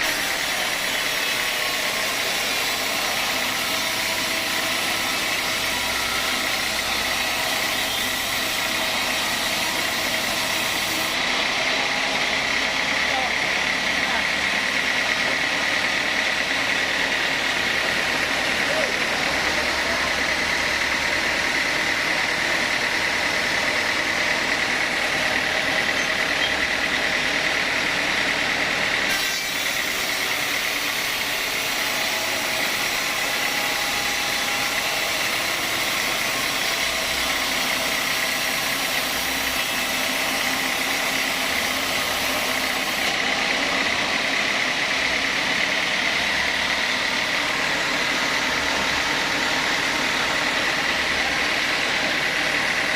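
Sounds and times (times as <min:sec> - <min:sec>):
sawmill machinery whining: 0:00.0 - 0:52.9.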